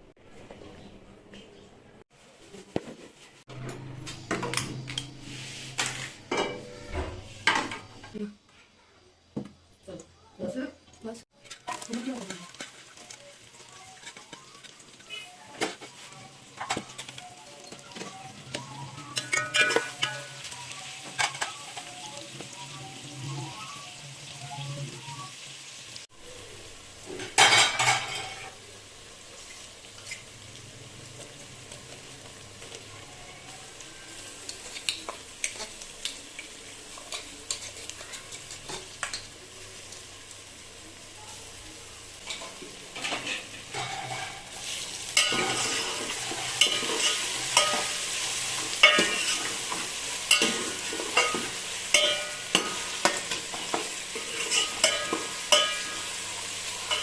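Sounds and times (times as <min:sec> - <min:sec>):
food sizzling in a pan: 0:02.3 - 0:57.0
spoon scraping a pan: 0:11.4 - 0:22.0, 0:33.4 - 0:39.3, 0:42.2 - 0:57.0.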